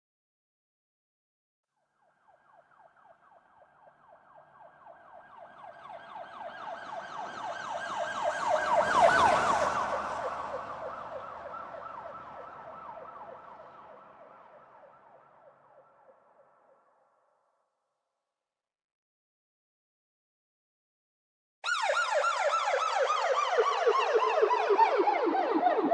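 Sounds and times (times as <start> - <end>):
police siren fast yelp: 2.3 - 15.1, 21.6 - 25.9.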